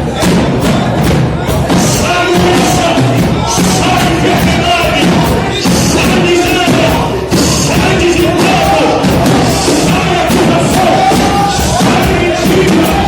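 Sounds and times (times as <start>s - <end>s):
driving drumbeat: 0.0s - 13.0s
voices singing: 0.0s - 13.0s.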